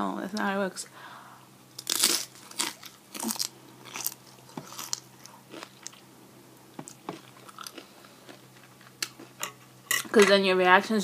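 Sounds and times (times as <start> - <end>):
person crunching crispy food: 1.8 - 6.0, 6.9 - 9.3.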